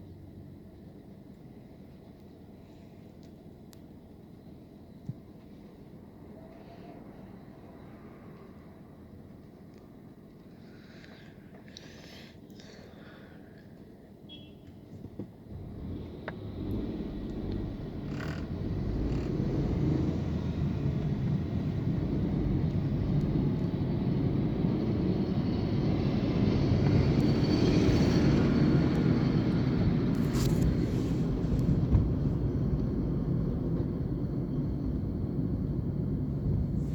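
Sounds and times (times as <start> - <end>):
faint high whine: 0.0 - 14.9, 22.7 - 32.4
bulldozer diesel engine rumbling: 15.5 - 36.9.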